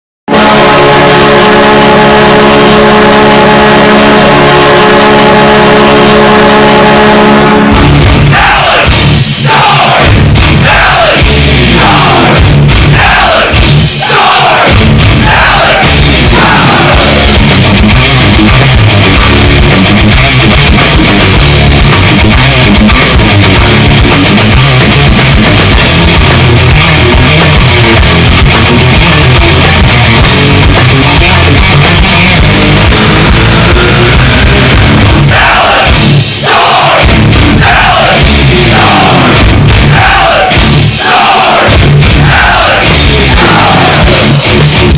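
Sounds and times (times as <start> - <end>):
goal horn chord: 0.3 - 8.2, 27.5 - 35.4
heavy rock song: 0.3 - 44.9.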